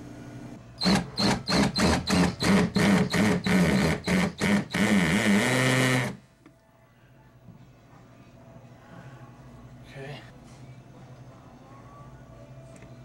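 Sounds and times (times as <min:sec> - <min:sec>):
power drill whining: 0:00.8 - 0:06.2.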